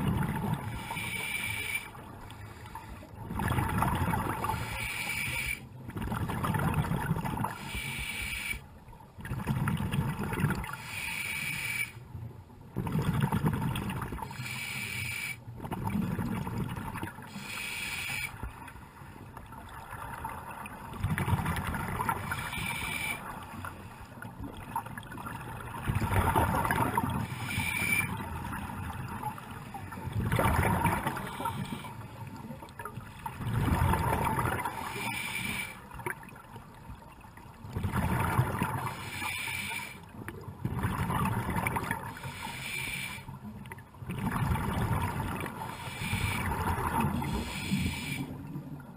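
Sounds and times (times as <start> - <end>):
regulator hiss on inhale: 0.6 - 3.1, 4.4 - 5.7, 7.6 - 8.6, 10.7 - 12.0, 14.2 - 15.4, 17.3 - 18.5, 22.2 - 24.0, 27.2 - 28.1, 31.2 - 32.2, 34.6 - 35.9, 38.8 - 40.1, 42.1 - 43.4, 45.6 - 46.6, 47.2 - 48.4
gurgling exhaled bubbles: 12.8 - 14.4, 25.2 - 29.0, 30.0 - 31.8, 33.2 - 35.0, 37.7 - 39.0, 40.5 - 42.2, 44.0 - 48.4.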